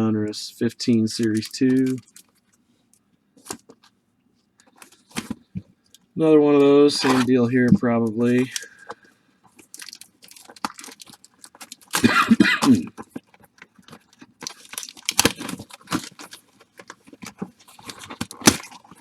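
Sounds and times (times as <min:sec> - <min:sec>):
card pack wrappers tearing: 0:00.9 - 0:02.3, 0:06.6 - 0:07.4, 0:09.6 - 0:19.0.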